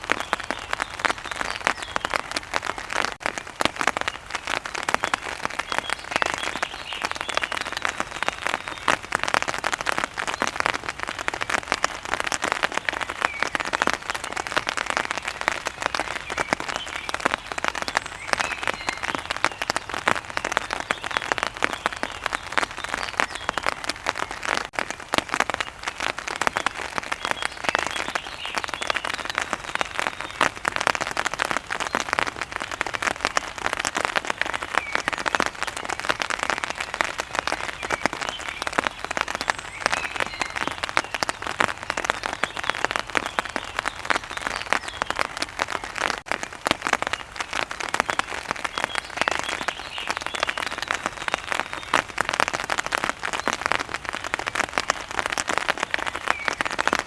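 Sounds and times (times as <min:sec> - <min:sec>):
heavy rain pattering: 0:00.0 - 0:57.0.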